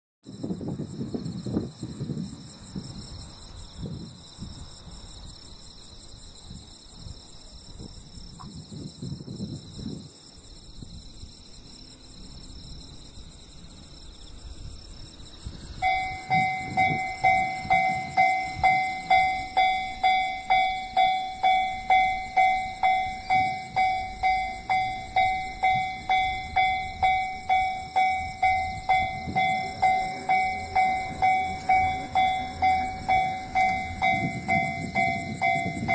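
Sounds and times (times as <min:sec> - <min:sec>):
level crossing warning bell: 0:15.8 - 0:35.9.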